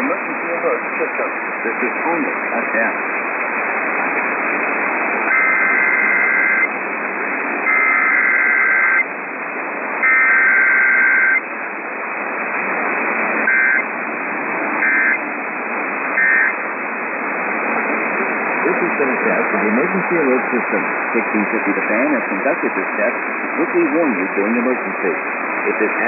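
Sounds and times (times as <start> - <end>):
static hiss: 0.0 - 26.0
buzzing data bursts: 5.3 - 6.7, 7.6 - 9.1, 10.0 - 11.4, 13.4 - 13.9, 14.8 - 15.2, 16.2 - 16.6.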